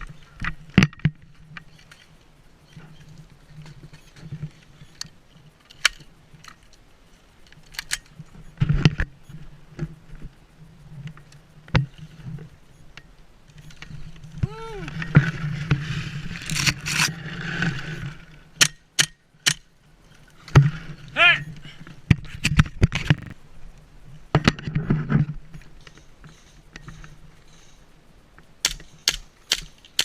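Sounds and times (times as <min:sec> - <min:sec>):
person shouting: 0:14.4 - 0:15.0, 0:21.2 - 0:21.5.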